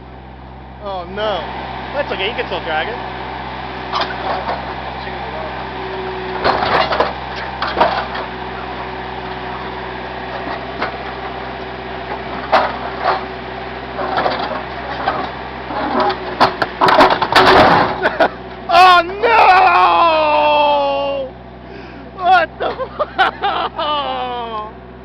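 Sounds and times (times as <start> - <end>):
backhoe engine running: 0.0 - 25.0
metal clanks and crunches: 3.9 - 5.1, 6.4 - 9.7, 12.1 - 13.3, 13.9 - 18.6.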